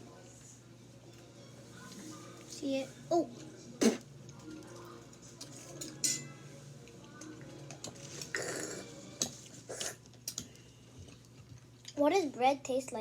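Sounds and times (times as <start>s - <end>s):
dishes and cutlery clinking: 4.7s - 6.4s.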